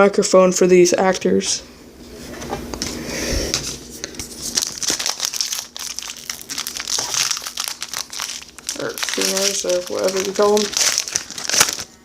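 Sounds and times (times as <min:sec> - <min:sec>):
plastic wrapper crinkling: 0:04.1 - 0:12.0.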